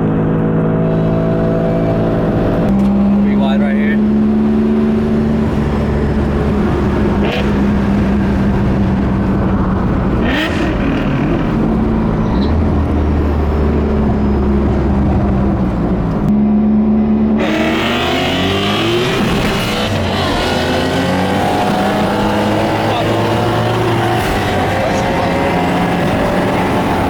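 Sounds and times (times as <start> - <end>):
rotary engine revving: 0.1 - 16.4, 17.0 - 27.0.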